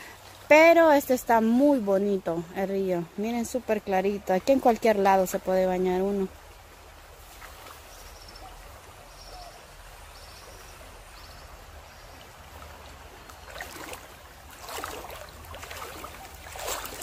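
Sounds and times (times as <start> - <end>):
river water rushing: 2.4 - 17.0
water splashing: 11.6 - 17.0.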